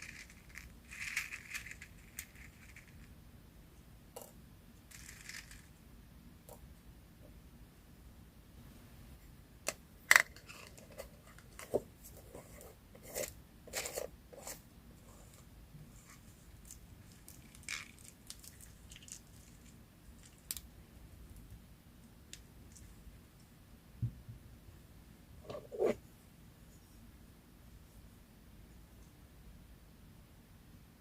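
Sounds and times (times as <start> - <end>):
paper crinkling: 0.0 - 3.1.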